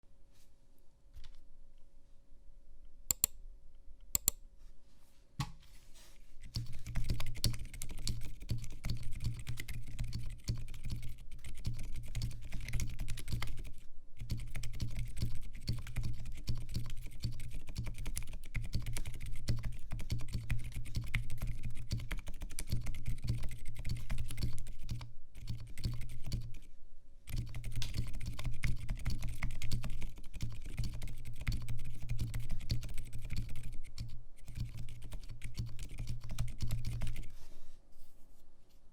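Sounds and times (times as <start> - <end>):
typing on mechanical keyboard: 6.4 - 26.7, 27.3 - 37.3.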